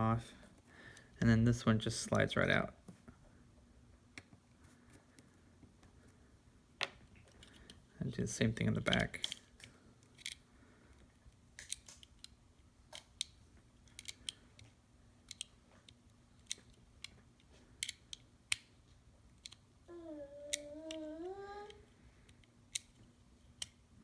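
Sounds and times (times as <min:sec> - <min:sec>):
screwdriver clicking on model car: 0:11.6 - 0:14.4
person humming: 0:19.9 - 0:21.8.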